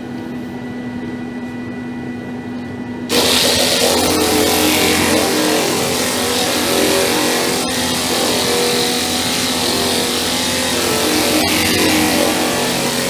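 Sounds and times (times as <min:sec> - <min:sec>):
pneumatic sander whirring: 0:03.1 - 0:13.0.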